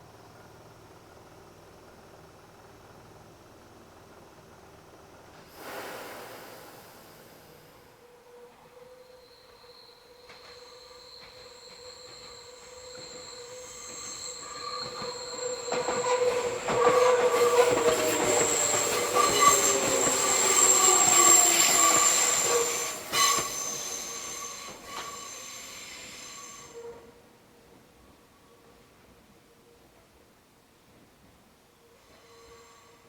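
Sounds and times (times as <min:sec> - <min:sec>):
train wheels squealing: 0:06.7 - 0:27.2, 0:31.8 - 0:33.0
train cars rumbling: 0:09.6 - 0:26.9.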